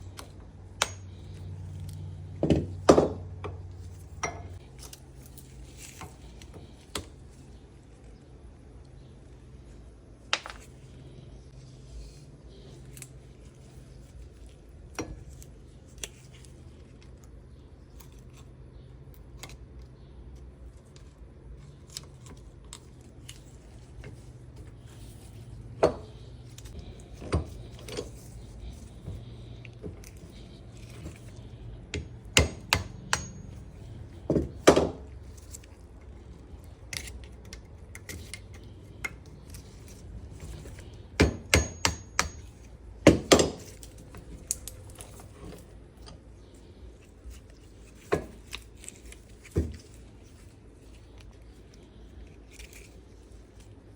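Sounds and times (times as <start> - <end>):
sharp metal knocks: 31.9 - 33.6, 41.2 - 42.5.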